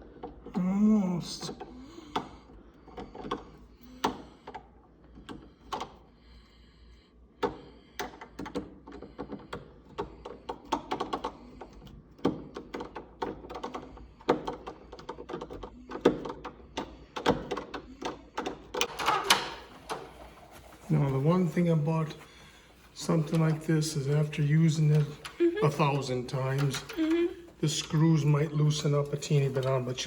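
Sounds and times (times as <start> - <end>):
door-knob hardware clicking: 12.2 - 20.1.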